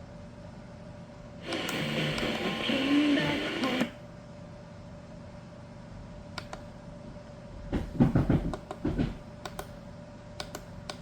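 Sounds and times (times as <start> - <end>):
faint hum with thin tone: 0.0 - 11.0.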